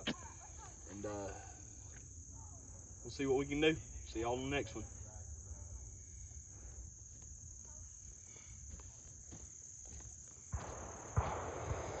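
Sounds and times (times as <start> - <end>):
insects trilling: 0.0 - 12.0.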